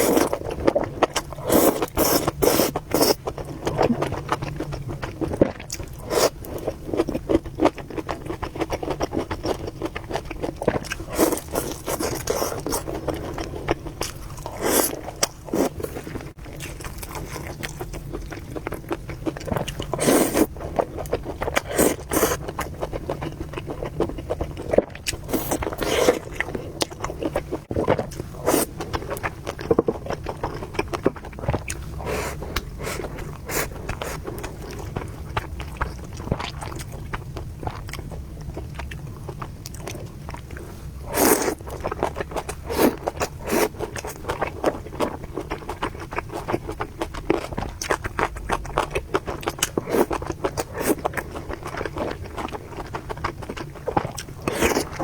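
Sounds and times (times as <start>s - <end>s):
person chewing: 0.0s - 55.0s
person slurping noodles: 1.4s - 4.2s, 11.0s - 13.2s, 14.4s - 16.0s, 20.0s - 20.5s, 28.4s - 28.7s.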